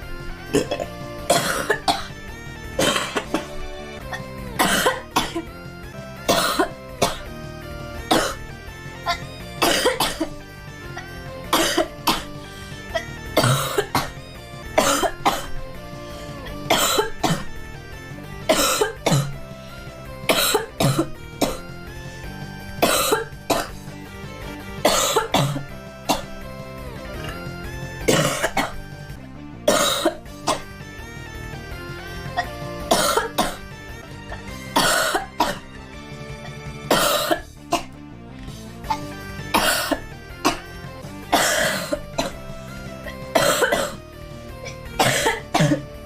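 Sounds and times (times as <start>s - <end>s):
background music: 0.0s - 46.0s
girl coughing: 0.6s - 2.1s, 2.8s - 3.5s, 4.6s - 5.5s, 6.3s - 7.3s, 8.1s - 8.4s, 9.1s - 10.3s, 11.5s - 12.3s, 13.4s - 14.1s, 14.8s - 15.6s, 16.7s - 17.5s, 18.5s - 19.3s, 20.3s - 21.6s, 22.8s - 23.8s, 24.9s - 26.3s, 28.1s - 28.8s, 29.7s - 30.6s, 32.9s - 33.6s, 34.8s - 35.6s, 36.9s - 37.4s, 38.9s - 40.6s, 41.4s - 42.4s, 43.3s - 44.0s, 45.0s - 45.8s.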